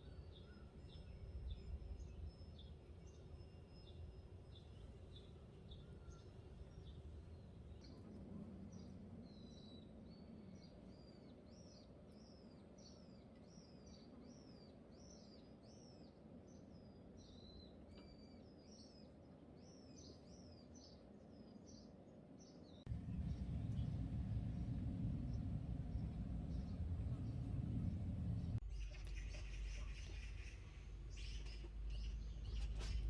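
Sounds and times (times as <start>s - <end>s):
low rumble: 22.9s - 28.8s
low hum: 22.9s - 29.7s
small bird chirping: 22.9s - 33.0s.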